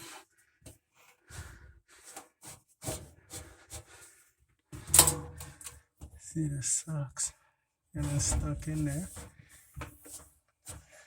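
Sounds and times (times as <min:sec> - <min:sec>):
handling rustles and knocks: 0:08.0 - 0:11.0.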